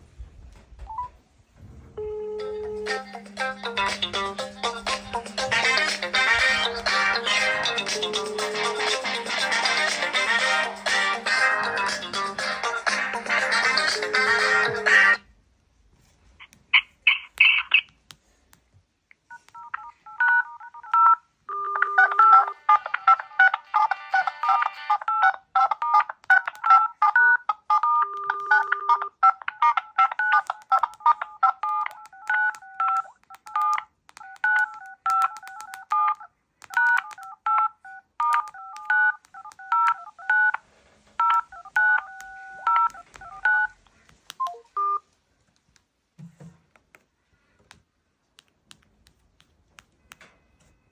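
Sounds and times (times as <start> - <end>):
telephone keypad tones: 0.8 - 1.1, 19.3 - 40.6, 41.2 - 45.0.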